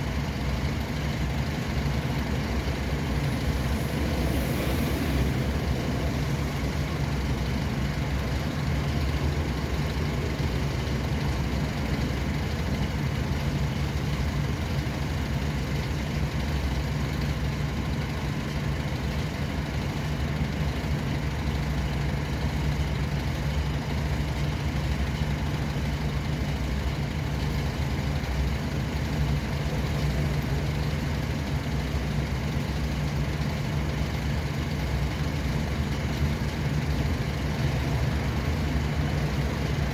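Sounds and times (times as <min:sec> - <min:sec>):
road noise: 0:00.0 - 0:39.9
vehicle engine hum: 0:00.0 - 0:39.9.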